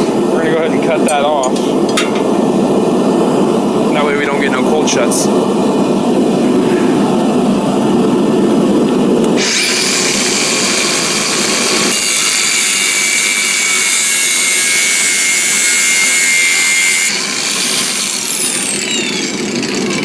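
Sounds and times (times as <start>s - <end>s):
angle grinder cutting steel: 9.4s - 20.0s.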